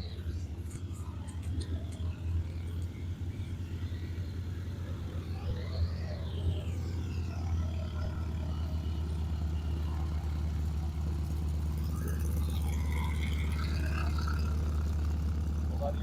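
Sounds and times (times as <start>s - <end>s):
piston aircraft engine droning: 0.0s - 16.0s.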